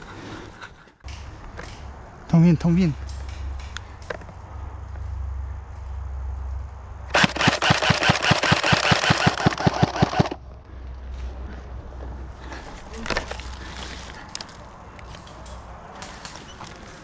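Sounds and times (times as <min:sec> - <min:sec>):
airsoft gun automatic burst: 0:07.1 - 0:10.4.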